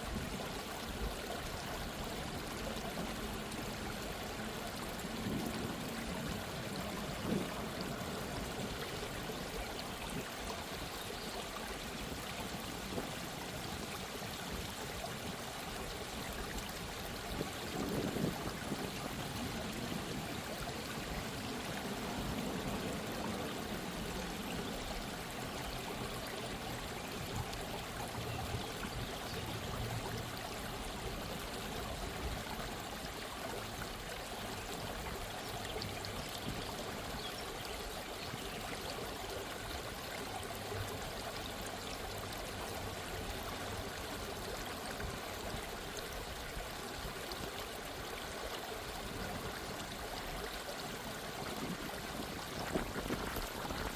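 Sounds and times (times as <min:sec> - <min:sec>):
water trickling: 0:00.0 - 0:53.9
water splashes: 0:39.0 - 0:53.9.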